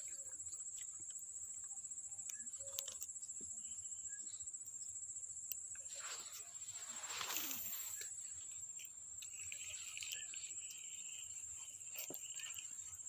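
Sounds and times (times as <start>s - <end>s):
insects chirring: 0.0s - 13.0s
faint clicks: 0.7s - 3.5s.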